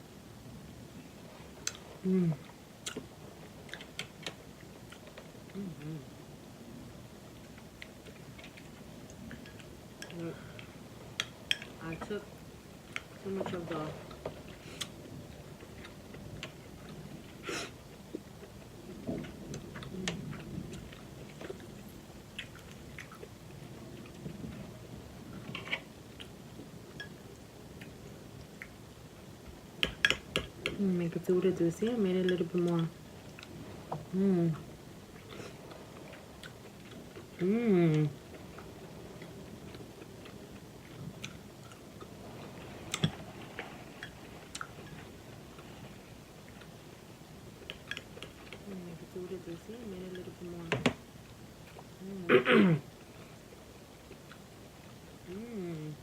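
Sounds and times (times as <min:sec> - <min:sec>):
quiet chewing: 0:01.5 - 0:06.1, 0:12.8 - 0:24.8, 0:32.2 - 0:46.8, 0:47.4 - 0:48.8, 0:49.9 - 0:52.1, 0:53.0 - 0:56.0
person chewing food: 0:15.6 - 0:23.4, 0:35.2 - 0:37.4, 0:38.3 - 0:42.2, 0:42.9 - 0:45.2, 0:54.0 - 0:55.4
small clicks and crackles: 0:35.2 - 0:51.9.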